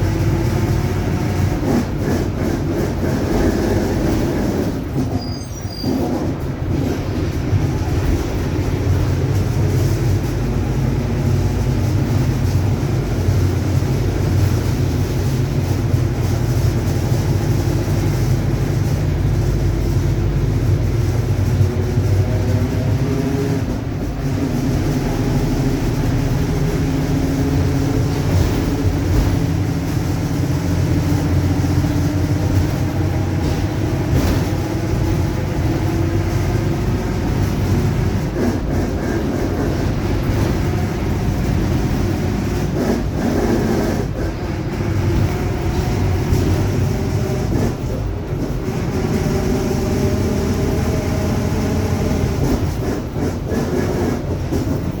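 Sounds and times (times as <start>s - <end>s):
bus engine low rumble: 0.0s - 55.0s.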